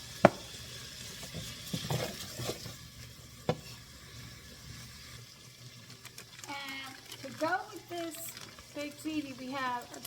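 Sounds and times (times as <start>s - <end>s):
sausage sizzling in a frying pan: 0.0s - 10.0s
utensil knocking a pan: 0.2s - 0.5s
utensil scraping a pan: 1.0s - 2.9s.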